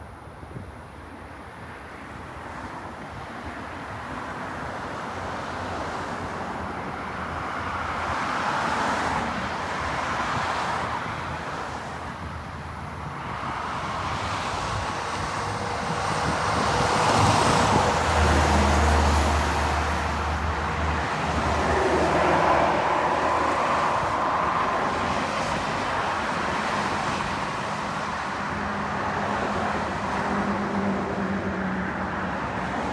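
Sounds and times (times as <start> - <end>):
road traffic passing: 3.8 - 32.9
bus engine rumble: 10.9 - 32.9.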